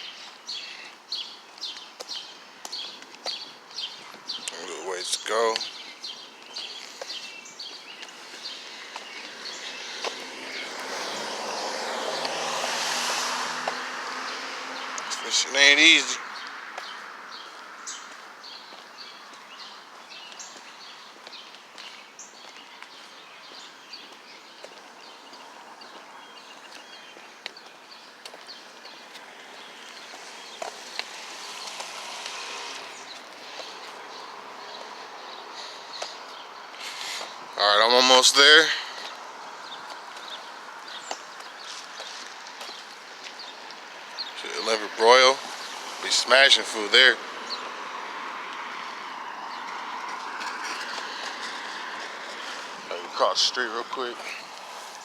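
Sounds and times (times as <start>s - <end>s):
small birds chirping: 0.0s - 55.0s
outdoor hiss: 30.2s - 33.1s.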